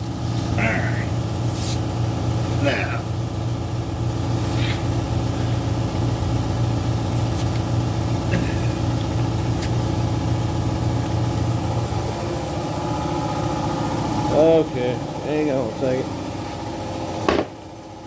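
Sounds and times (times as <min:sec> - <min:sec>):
motor droning: 0:00.0 - 0:17.9.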